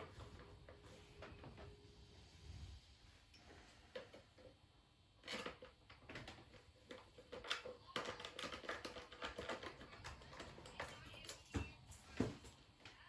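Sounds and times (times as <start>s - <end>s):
hard parts clicking and tapping: 5.2s - 13.0s.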